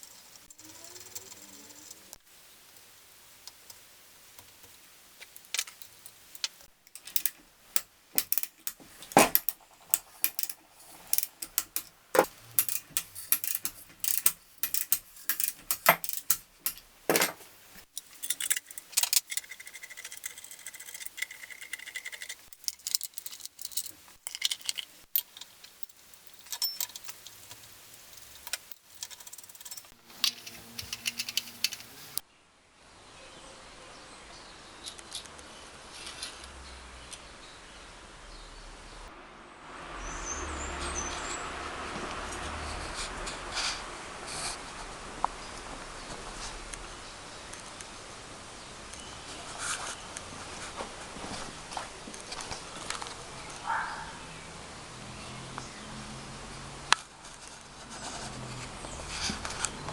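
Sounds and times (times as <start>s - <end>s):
metallic tool clinks and taps: 5.5s - 32.2s.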